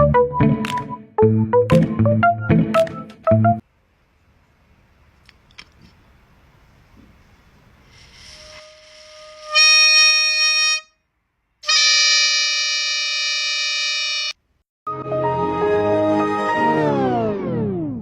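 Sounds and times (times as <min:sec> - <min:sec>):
reedy wind instrument notes: 0:11.6 - 0:14.4.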